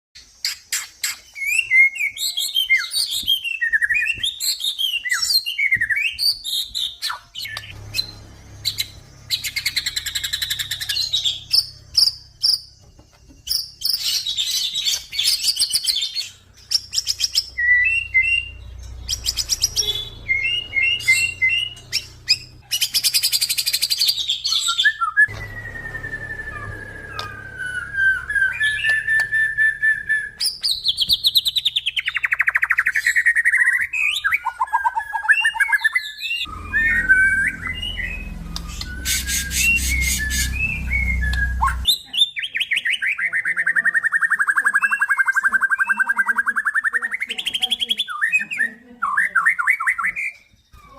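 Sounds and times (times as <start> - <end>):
songbird singing whistles and trills: 0.2 - 50.9
low steady hum: 25.3 - 30.5, 36.5 - 41.9.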